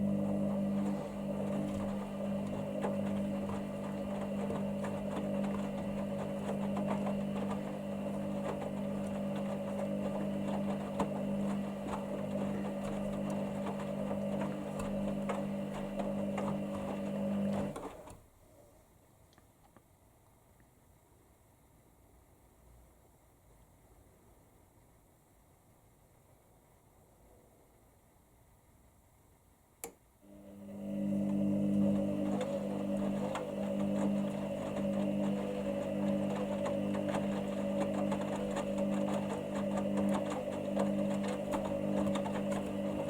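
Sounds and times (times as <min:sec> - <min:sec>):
washer-dryer motor hum: 0:00.0 - 0:18.2, 0:30.2 - 0:43.0.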